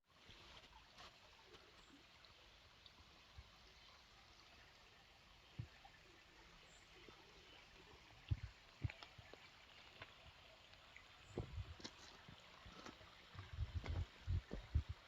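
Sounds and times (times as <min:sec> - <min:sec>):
soft low thumps: 0:08.2 - 0:09.0, 0:11.3 - 0:11.9, 0:13.4 - 0:15.0.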